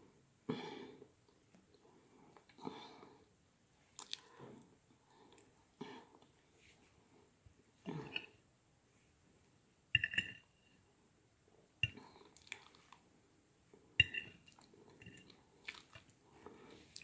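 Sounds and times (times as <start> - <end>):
faint chewing: 3.9 - 6.4, 11.9 - 13.1, 14.4 - 17.0
utensil clinking against dish: 14.0 - 14.4.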